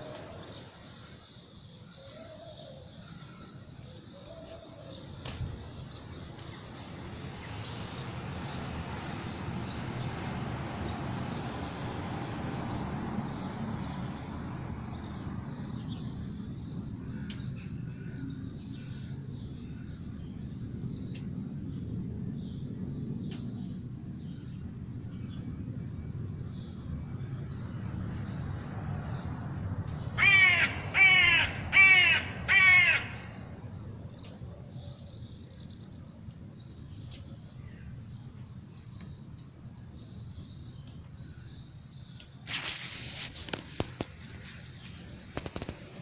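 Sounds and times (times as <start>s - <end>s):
crow cawing: 30.2s - 33.4s.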